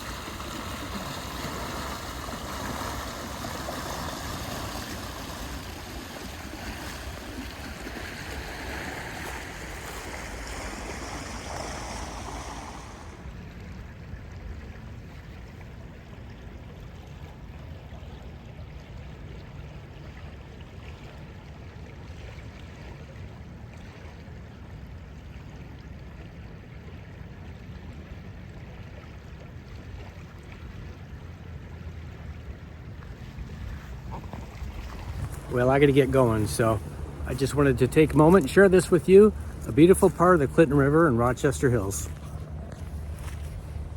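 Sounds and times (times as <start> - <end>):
river water rushing: 0.0 - 13.8, 29.5 - 43.9
wind rumble on microphone: 0.0 - 15.6, 28.0 - 40.6, 41.9 - 43.9.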